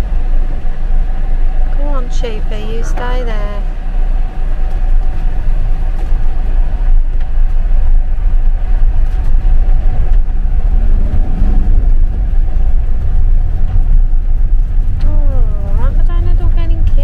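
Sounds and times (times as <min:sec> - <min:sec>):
engine and road rumble: 0:00.0 - 0:17.0
steady high whine: 0:00.0 - 0:17.0.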